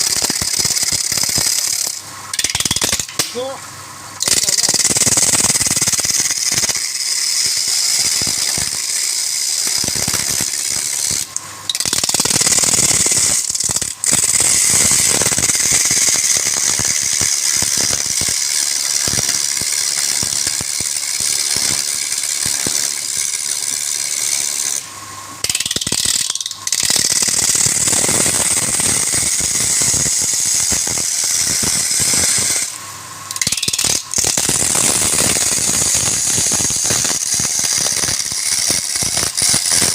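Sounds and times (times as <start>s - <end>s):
wood lathe tool scraping: 4.2s - 24.8s, 35.4s - 39.9s.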